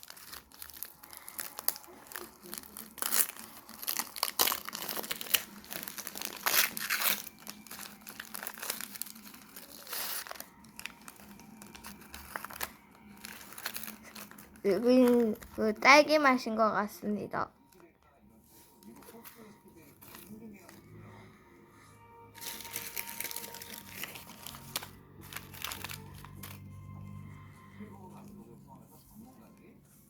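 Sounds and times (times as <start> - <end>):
foil tearing: 0.0 - 15.7, 18.8 - 20.8, 22.4 - 26.7
foil wrapper crinkling: 0.0 - 15.9, 18.6 - 20.8, 22.4 - 26.7.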